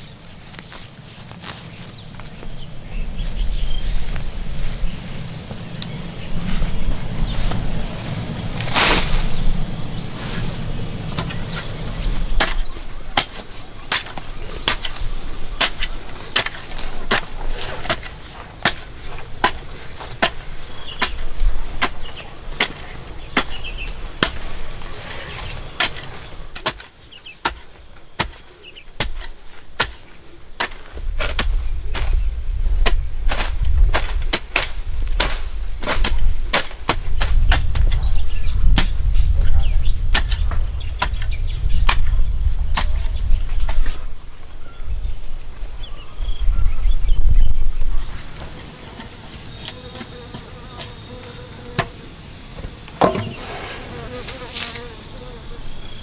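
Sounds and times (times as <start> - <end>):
insects trilling: 0.0 - 56.0.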